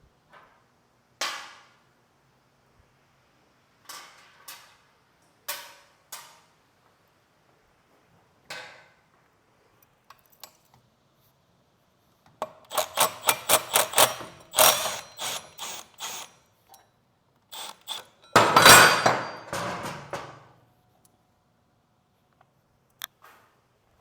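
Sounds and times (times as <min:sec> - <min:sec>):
metal tools clinking: 0:12.7 - 0:16.9, 0:17.8 - 0:20.4.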